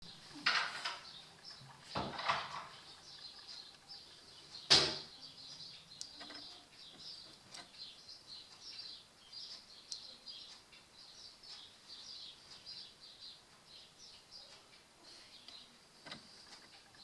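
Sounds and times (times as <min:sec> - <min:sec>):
high-pitched chirping: 0:02.6 - 0:14.6
faint clicks: 0:05.5 - 0:11.8.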